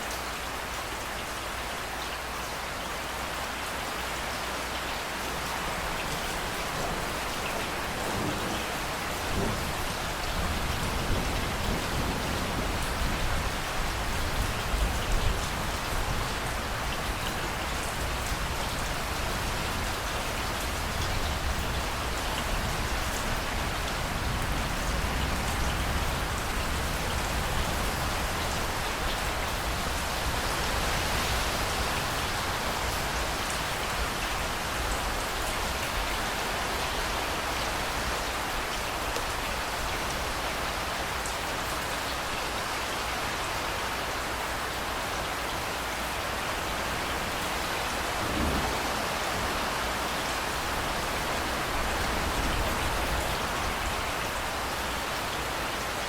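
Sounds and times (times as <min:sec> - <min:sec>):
steady rain: 0:00.0 - 0:56.0
thunder rumbling: 0:47.9 - 0:53.9.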